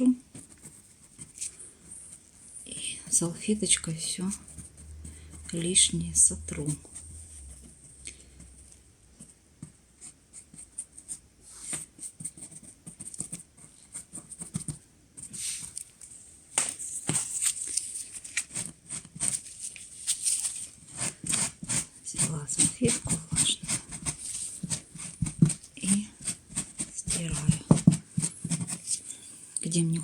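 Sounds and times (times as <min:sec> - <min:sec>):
brush tapping and scratching: 0:06.7 - 0:15.8, 0:16.6 - 0:29.1.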